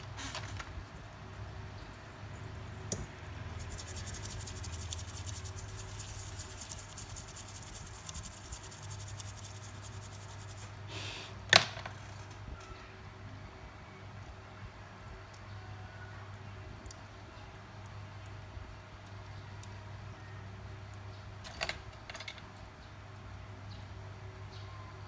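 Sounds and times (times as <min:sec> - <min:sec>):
steady low hum: 0:00.9 - 0:10.9
faint scratching ticks: 0:03.4 - 0:10.8.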